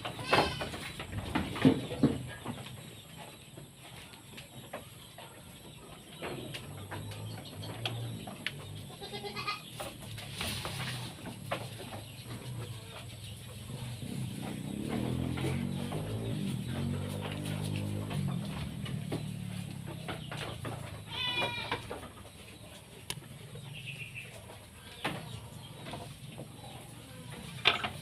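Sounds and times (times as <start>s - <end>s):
goats bleating: 0.1s - 1.0s, 8.8s - 9.8s, 21.0s - 22.0s.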